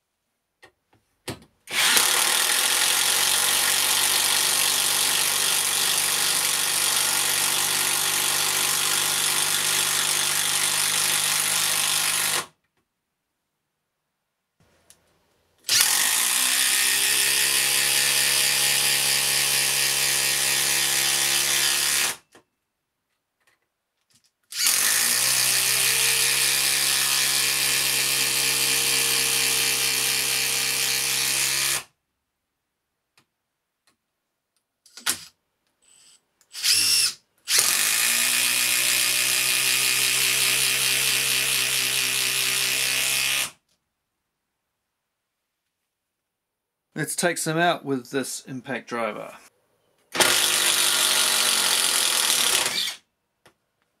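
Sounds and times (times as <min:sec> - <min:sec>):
impact driver driving screws into wood: 0:01.3 - 0:12.6, 0:15.7 - 0:22.5, 0:24.5 - 0:31.9, 0:34.9 - 0:43.6, 0:50.1 - 0:53.0.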